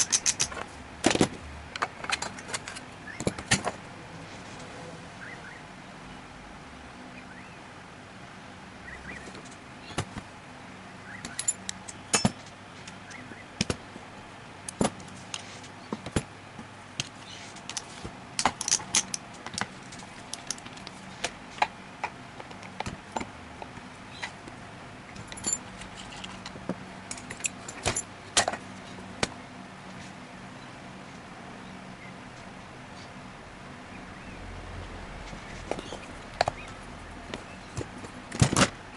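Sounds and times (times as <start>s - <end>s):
small metal tools clinking: 0.0s - 0.6s, 11.3s - 12.5s, 17.6s - 19.2s, 25.2s - 26.5s.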